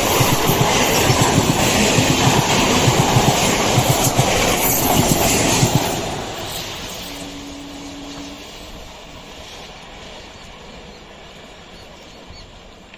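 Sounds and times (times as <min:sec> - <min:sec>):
train wheels clicking over joints: 0:00.0 - 0:07.2.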